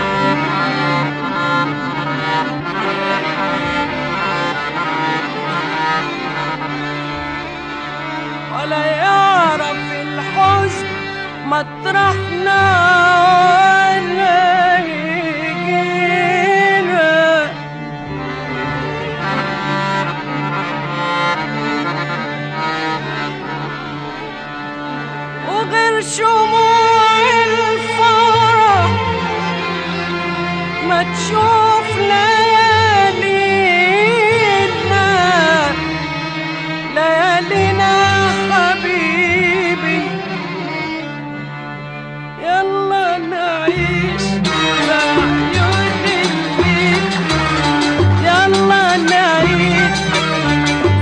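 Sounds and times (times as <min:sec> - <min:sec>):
accordion-like melody: 0:00.0 - 0:51.0
sustained strings: 0:00.0 - 0:51.0
held bass note: 0:44.3 - 0:51.0.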